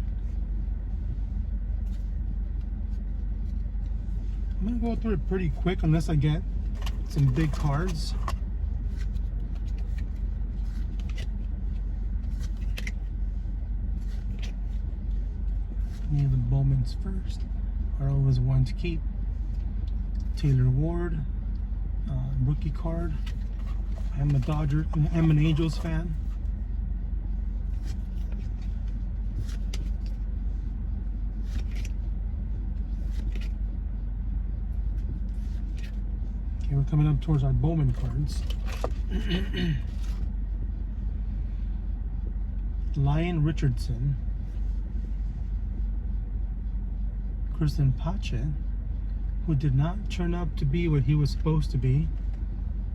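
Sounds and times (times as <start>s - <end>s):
low rumble inside a car: 0.0s - 52.9s
trading cards sliding: 6.7s - 11.4s, 23.1s - 26.4s, 27.7s - 30.2s, 31.4s - 32.0s, 32.9s - 33.6s.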